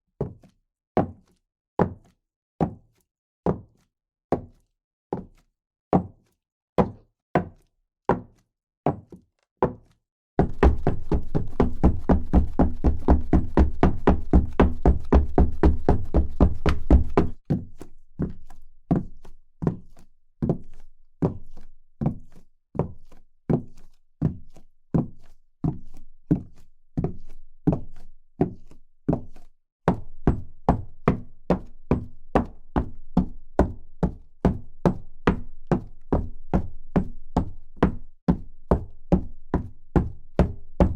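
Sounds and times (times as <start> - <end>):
footsteps: 10.4 - 17.4.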